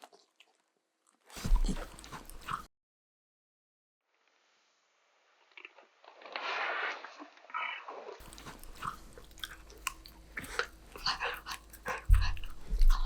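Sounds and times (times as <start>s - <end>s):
puppy crunching a snack: 0.0s - 2.7s, 8.2s - 13.0s.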